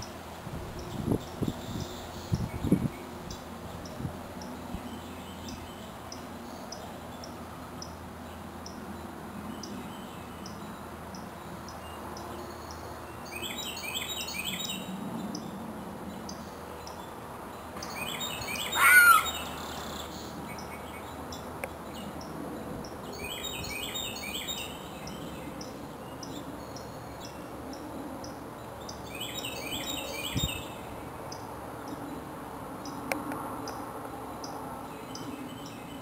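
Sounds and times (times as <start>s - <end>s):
loud gliding bird call: 17.8s - 20.2s.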